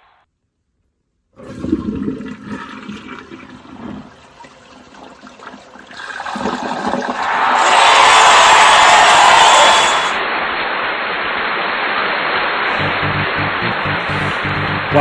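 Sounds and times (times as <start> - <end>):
toilet flushing: 1.4 - 7.7.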